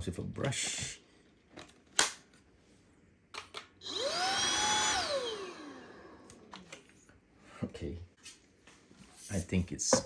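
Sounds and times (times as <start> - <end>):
vacuum cleaner motor whining: 3.8 - 6.6.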